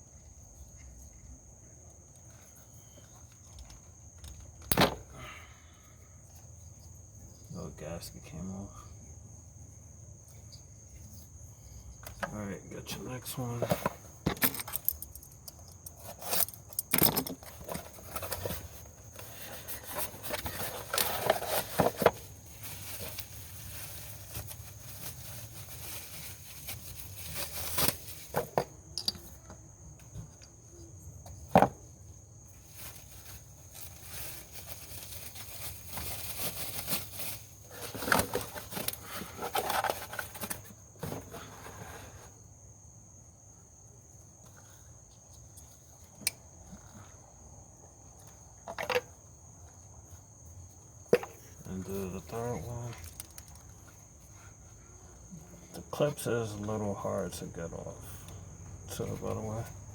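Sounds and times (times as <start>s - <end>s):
crickets chirring: 0.0s - 59.9s
hands handling plastic parts: 13.5s - 29.5s, 32.7s - 41.8s, 52.2s - 53.9s.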